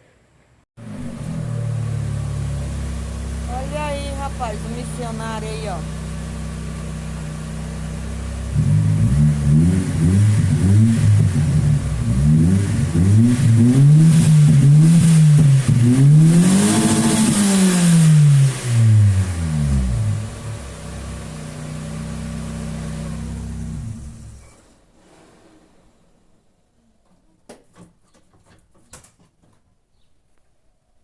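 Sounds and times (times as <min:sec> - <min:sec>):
car engine idling and revving: 0:00.8 - 0:24.7.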